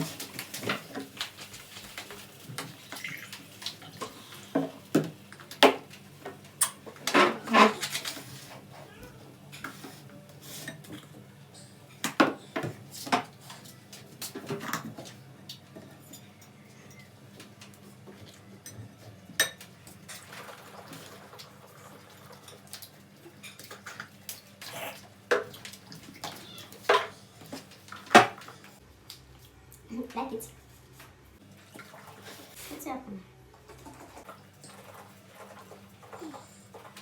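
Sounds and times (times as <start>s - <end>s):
kitchenware clattering: 3.9s - 8.6s, 26.2s - 28.5s.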